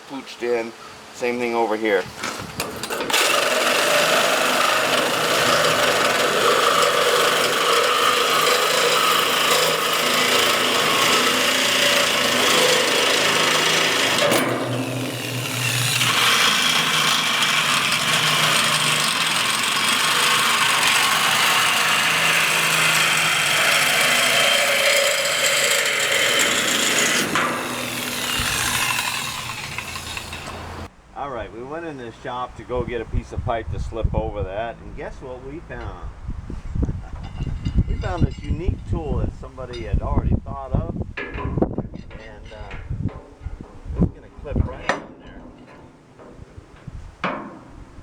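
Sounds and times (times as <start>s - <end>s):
power tool cutting steel: 2.6s - 30.9s.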